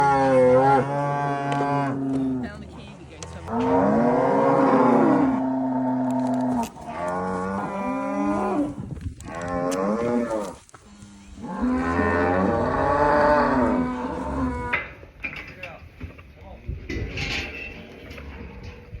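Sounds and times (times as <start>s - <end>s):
cattle mooing: 0.0s - 2.6s, 3.4s - 14.9s.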